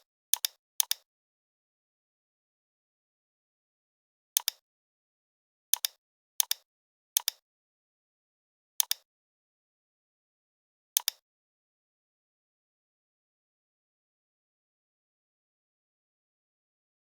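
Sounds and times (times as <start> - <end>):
computer mouse clicking: 0.4 - 1.0, 4.4 - 4.6, 5.8 - 6.6, 7.2 - 7.4, 8.8 - 9.0, 11.0 - 11.2.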